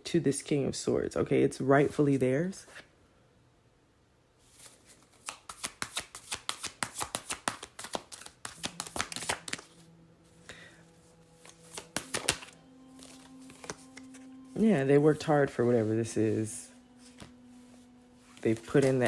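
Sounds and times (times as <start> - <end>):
cards being shuffled: 4.4 - 9.9, 10.5 - 19.0
soft background music: 7.8 - 19.0.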